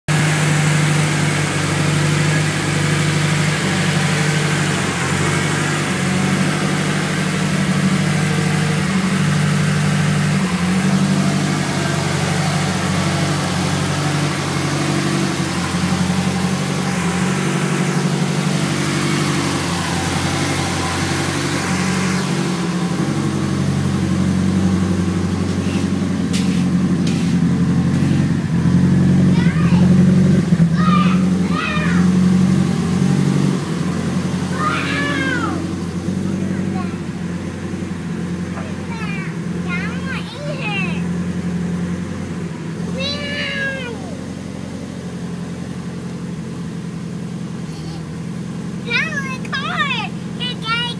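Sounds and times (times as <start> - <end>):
car engine idling: 0.0 - 50.9.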